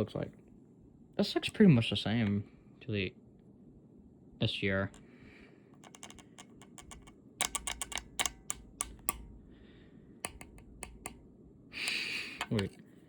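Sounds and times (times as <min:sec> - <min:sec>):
clicks and taps of handled hardware: 0:05.8 - 0:09.4, 0:10.3 - 0:11.2, 0:11.8 - 0:12.8.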